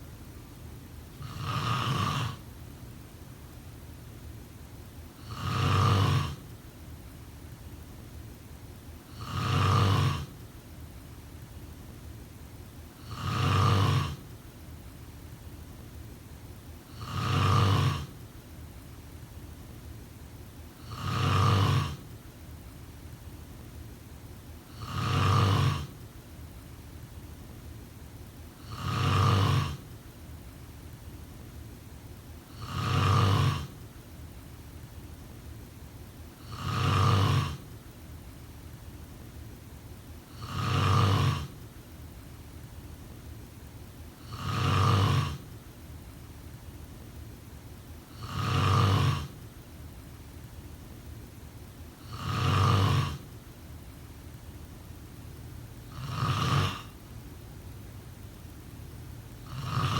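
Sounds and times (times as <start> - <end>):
person snoring: 1.2 - 2.4, 5.2 - 6.4, 9.1 - 10.4, 13.0 - 14.3, 16.9 - 18.2, 20.8 - 22.1, 24.7 - 26.0, 28.6 - 29.9, 32.5 - 33.8, 36.4 - 37.7, 40.3 - 41.6, 44.2 - 45.6, 48.1 - 49.4, 52.0 - 53.3, 55.9 - 57.0, 59.4 - 59.9.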